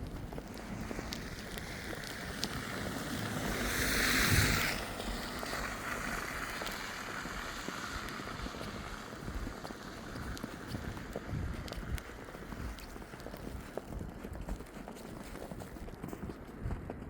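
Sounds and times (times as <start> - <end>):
footsteps crunching in snow: 0.0 - 17.0
wind rushing: 0.7 - 7.3
hissing rush: 3.2 - 7.3.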